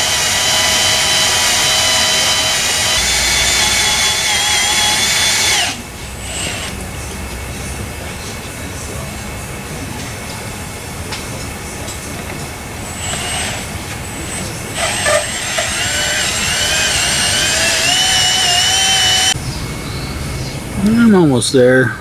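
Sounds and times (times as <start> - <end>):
high wavering squeal of drill bit: 0.0 - 6.7, 12.9 - 19.4
drill bit grinding into metal: 0.0 - 9.2, 11.4 - 19.4.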